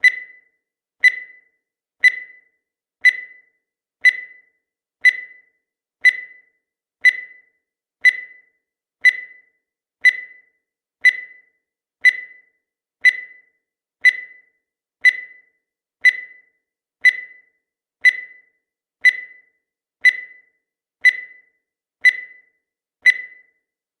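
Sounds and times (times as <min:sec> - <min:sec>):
short high beeps: 0:23.1 - 0:23.5.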